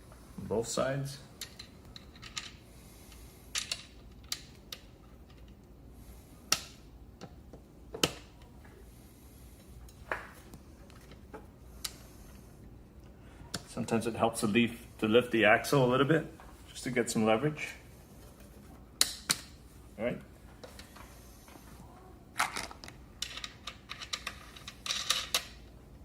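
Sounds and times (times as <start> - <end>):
metal parts clicking and tapping: 1.4 - 2.6, 3.5 - 5.7.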